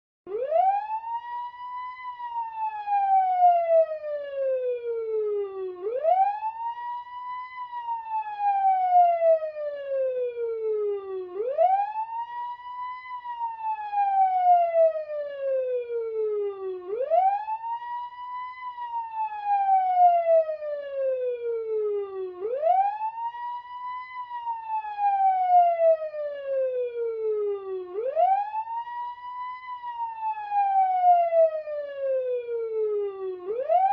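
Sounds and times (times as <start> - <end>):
fire engine siren wailing: 0.3 - 33.9.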